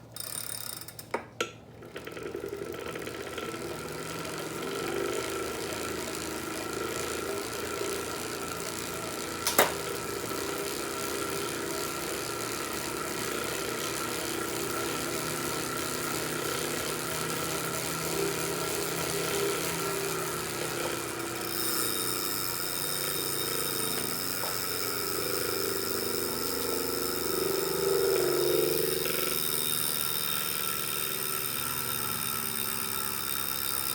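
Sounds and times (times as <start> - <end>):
bike trainer whirring hum: 0.0 - 33.9
higher whine: 22.6 - 30.5.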